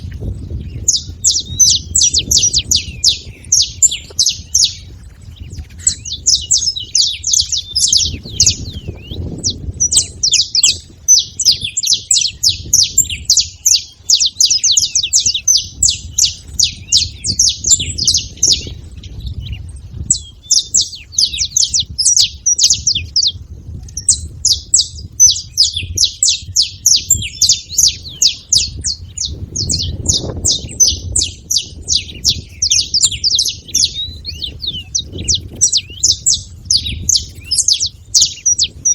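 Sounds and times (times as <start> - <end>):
finch chirping: 0.0 - 38.9.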